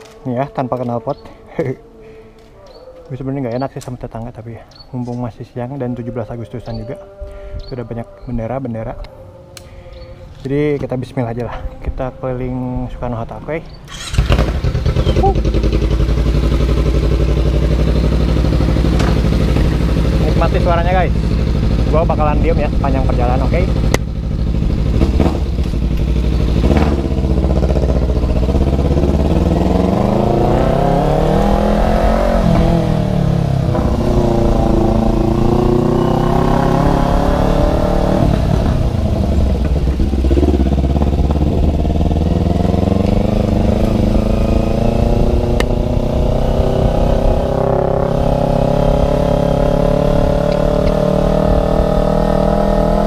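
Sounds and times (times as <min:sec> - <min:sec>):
motorcycle engine revving: 0:13.9 - 0:53.0.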